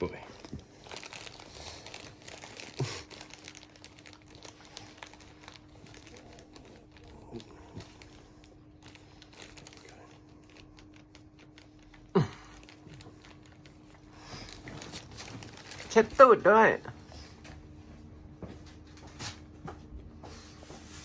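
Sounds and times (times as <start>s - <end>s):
wet wipe rustling and crinkling: 0.0s - 16.8s
faint steady hum: 0.0s - 21.0s.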